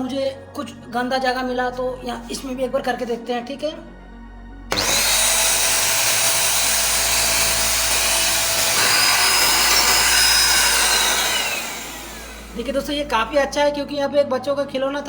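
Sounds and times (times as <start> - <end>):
handheld vacuum cleaner whining: 4.7 - 13.1.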